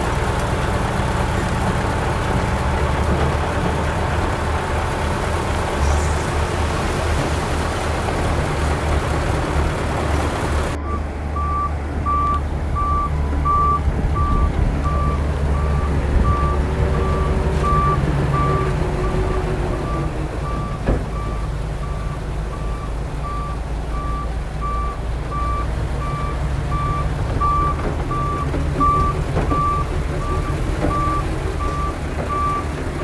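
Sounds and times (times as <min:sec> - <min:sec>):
diesel engine running: 0:00.0 - 0:33.0
reversing alarm beeping: 0:10.8 - 0:19.2, 0:19.9 - 0:32.7.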